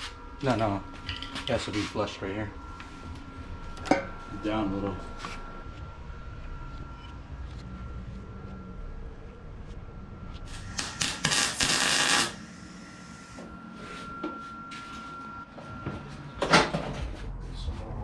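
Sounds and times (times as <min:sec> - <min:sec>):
faint steady whine: 0:00.0 - 0:18.0
hissing crackling burst: 0:10.7 - 0:12.4.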